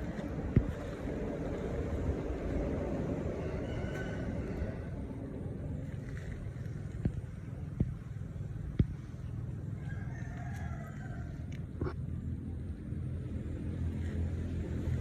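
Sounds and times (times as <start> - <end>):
excavator engine running: 0.0 - 9.7.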